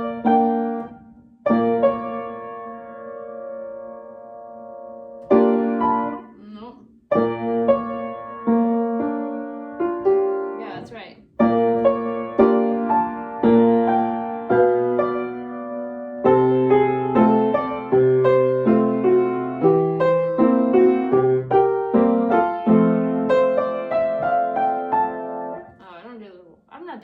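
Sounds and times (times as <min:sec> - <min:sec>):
piano chords: 0:00.0 - 0:26.0.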